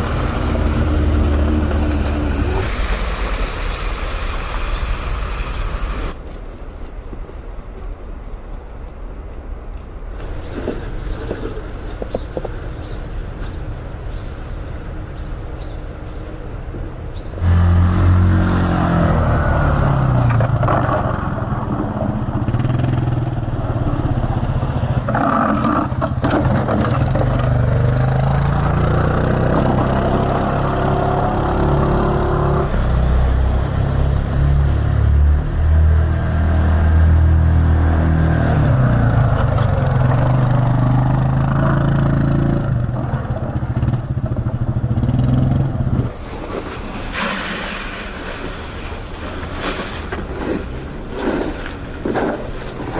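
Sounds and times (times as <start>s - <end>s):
car engine revving: 17.4s - 46.1s.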